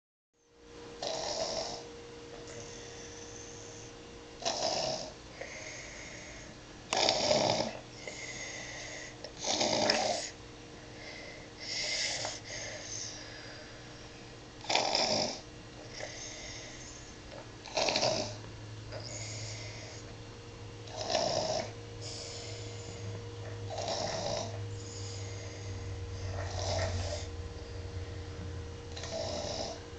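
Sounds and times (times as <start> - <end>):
toddler snoring: 1.0 - 1.8, 2.5 - 10.4, 11.0 - 13.3, 14.6 - 20.1, 20.9 - 27.9, 28.9 - 29.8
soft breaths: 1.8 - 4.2, 5.3 - 14.3, 15.8 - 17.4, 18.3 - 20.2, 21.0 - 29.8.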